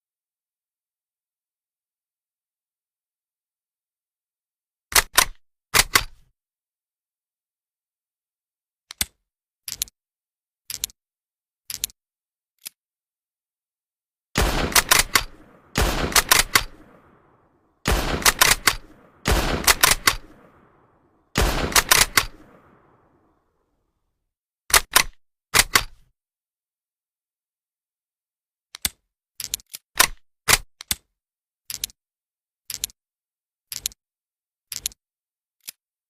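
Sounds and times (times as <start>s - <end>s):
rifle action clicks: 14.4s - 17.2s, 17.9s - 20.7s, 21.4s - 23.1s, 24.7s - 26.0s
gunfire bursts with echo: 14.4s - 23.3s.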